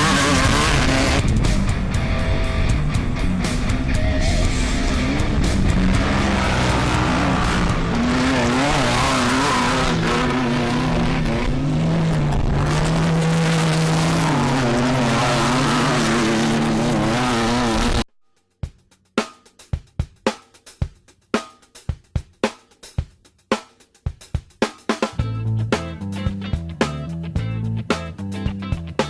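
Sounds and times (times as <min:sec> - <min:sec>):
race car engine running hard: 0:00.0 - 0:18.0
sharp hits: 0:00.0 - 0:18.0.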